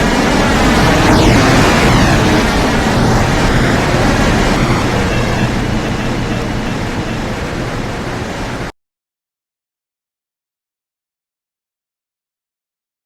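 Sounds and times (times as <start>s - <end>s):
train rushing past: 0.0s - 8.7s.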